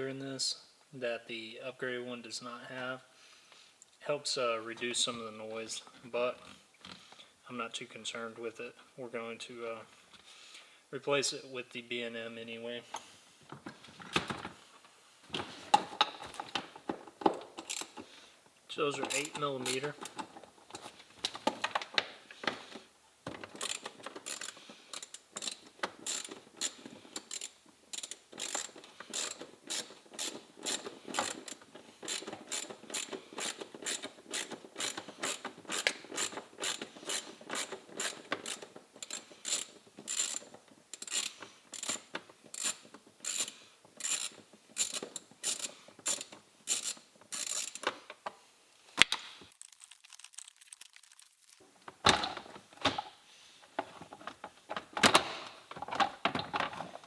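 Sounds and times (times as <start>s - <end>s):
ratchet clicking: 17.6s - 18.0s, 19.1s - 20.2s, 23.6s - 47.9s.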